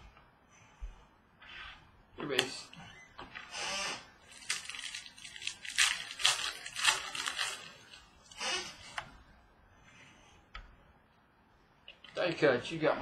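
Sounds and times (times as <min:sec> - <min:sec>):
wrapper crinkling: 0:04.2 - 0:08.4.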